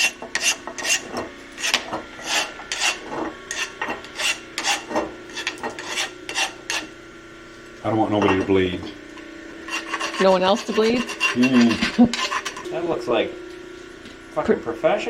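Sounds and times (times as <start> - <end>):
file rasping across metal: 0.0 - 7.0, 9.6 - 12.7.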